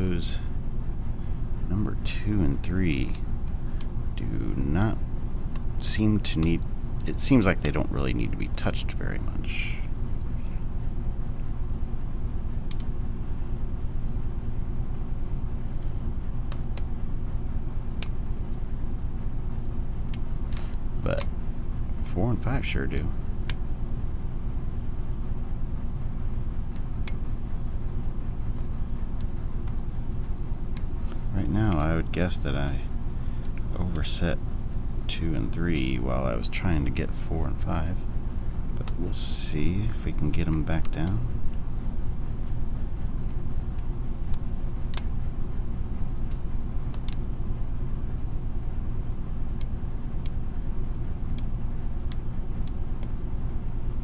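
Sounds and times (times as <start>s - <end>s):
steady low hum: 0.0s - 54.0s
lock pick metallic ticks: 12.7s - 12.9s, 31.7s - 32.8s.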